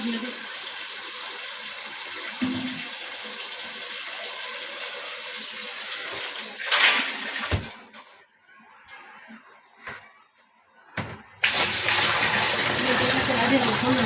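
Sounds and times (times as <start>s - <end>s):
water running from a tap: 0.0s - 7.6s, 11.4s - 14.0s.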